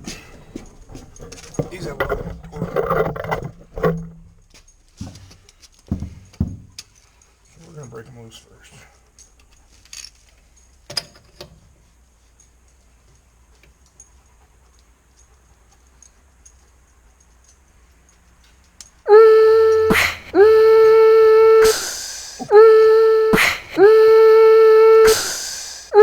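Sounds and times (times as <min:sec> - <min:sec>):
impact wrench whining: 0:19.1 - 0:26.0.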